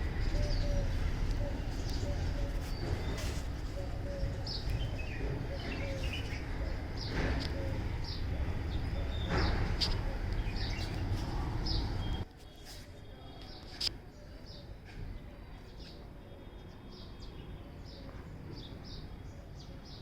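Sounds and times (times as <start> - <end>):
birds chirping: 0.0 - 12.3
steady low rumble: 0.0 - 12.3.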